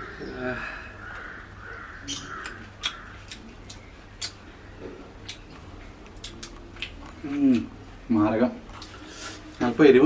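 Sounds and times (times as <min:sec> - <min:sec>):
crunching and chewing fried fish: 0:02.3 - 0:04.5, 0:05.2 - 0:07.7.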